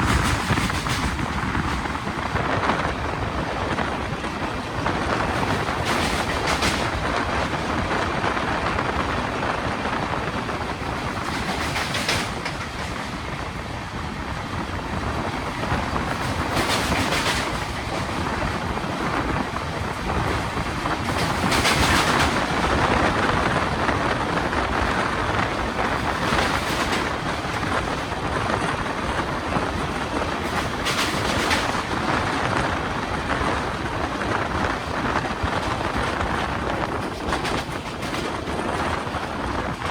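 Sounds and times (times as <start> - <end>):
train rumbling on track: 0.0 - 39.9
wheels clacking over rail joints: 0.0 - 39.9.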